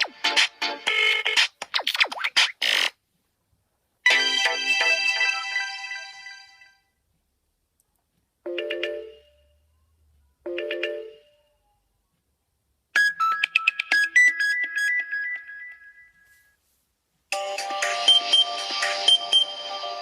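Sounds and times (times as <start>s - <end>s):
synthesized phone ringtone: 4.1s - 6.6s, 17.4s - 20.0s
ringtone of quick notes: 17.4s - 20.0s.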